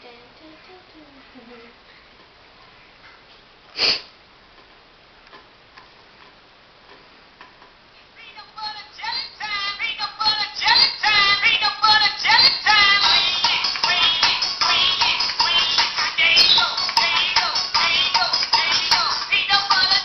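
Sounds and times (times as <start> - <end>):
song ringtone with singing: 9.3 - 20.0.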